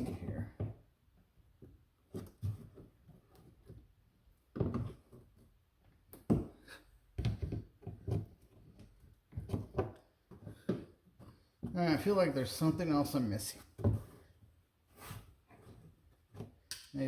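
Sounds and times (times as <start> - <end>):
plastic cover plate knocks and rattles: 7.2 - 11.8.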